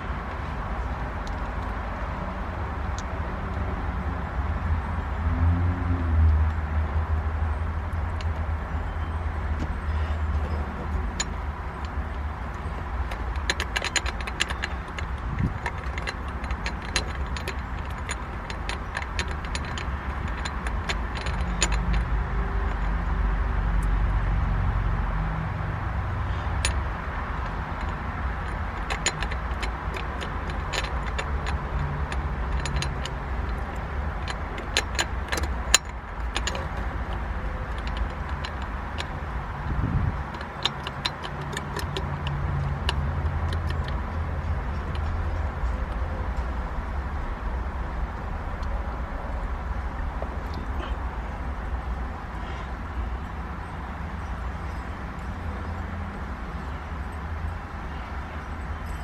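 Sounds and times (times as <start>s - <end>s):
metal parts and tools clinking: 7.7s - 24.3s, 26.2s - 47.1s, 48.1s - 59.0s
steady low rumble: 25.8s - 52.4s.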